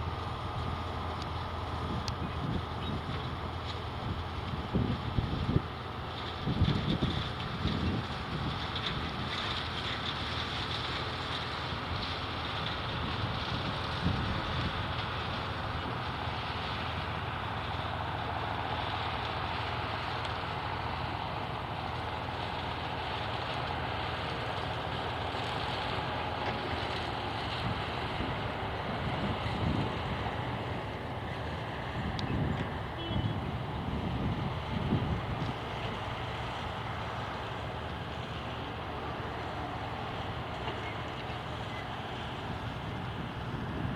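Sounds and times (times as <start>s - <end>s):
heavy farm machinery running: 0.0s - 43.9s
wind buffeting microphone: 1.5s - 9.5s, 27.2s - 43.9s.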